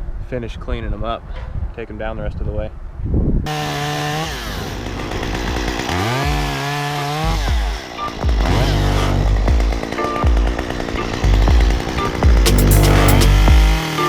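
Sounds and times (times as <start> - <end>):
chainsaw revving: 3.5 - 14.0.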